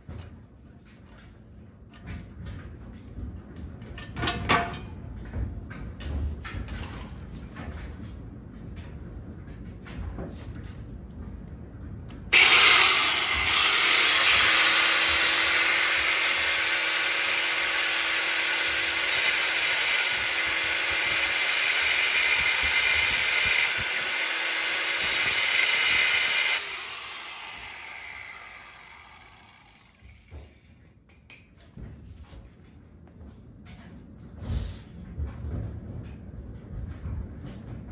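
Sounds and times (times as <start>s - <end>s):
angle grinder cutting metal: 12.4s - 30.4s.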